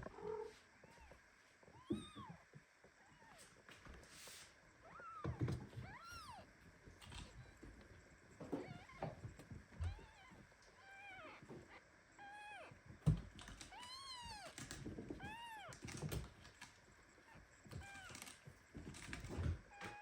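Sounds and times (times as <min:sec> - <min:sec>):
kitten meowing: 0:04.9 - 0:06.4, 0:09.9 - 0:12.7, 0:13.7 - 0:14.6, 0:15.2 - 0:15.8.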